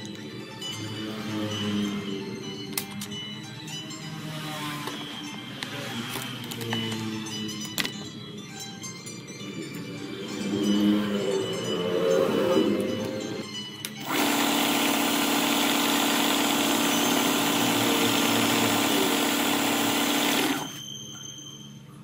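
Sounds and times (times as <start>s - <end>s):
background music: 0.0s - 20.8s
small power tool running: 14.0s - 20.8s.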